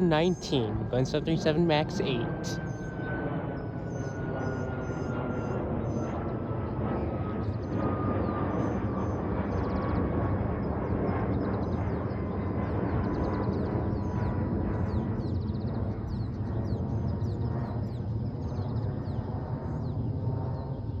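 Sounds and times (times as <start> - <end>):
jet engine roar: 0.0 - 13.1.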